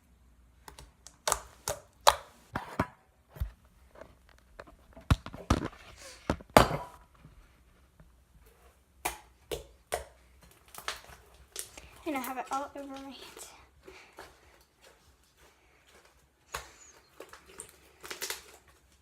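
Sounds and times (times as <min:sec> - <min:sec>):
slime sticky clicks and pops: 0:00.7 - 0:02.3.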